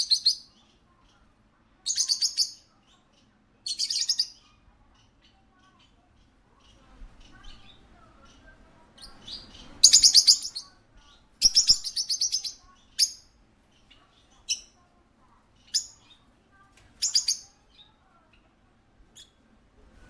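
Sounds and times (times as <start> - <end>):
parakeet chirping: 0.0 - 0.6, 1.9 - 3.0, 3.7 - 6.0, 6.8 - 14.8, 15.6 - 16.2, 17.0 - 17.9.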